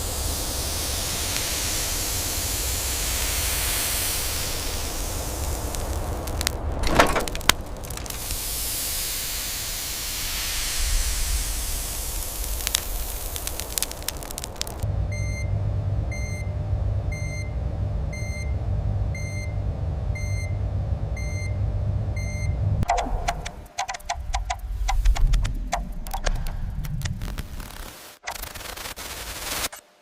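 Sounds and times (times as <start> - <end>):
rushing hiss: 0.0 - 14.8
low rumble: 4.2 - 8.6, 10.7 - 27.8
sharp cracks: 4.2 - 9.0, 10.8 - 14.8, 22.8 - 29.8
sharp clicks: 5.4 - 8.4, 12.2 - 14.8, 22.8 - 29.0.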